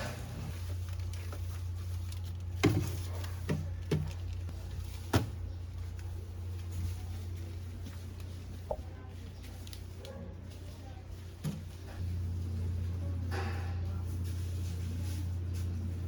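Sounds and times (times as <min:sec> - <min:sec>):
steady low hum: 0:10.8 - 0:16.0.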